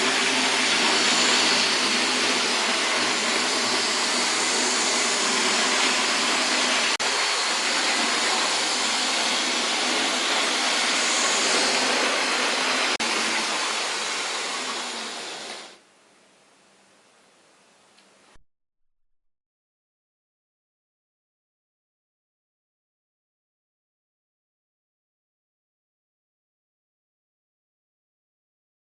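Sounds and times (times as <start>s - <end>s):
steady rushing hiss: 0.0s - 15.9s.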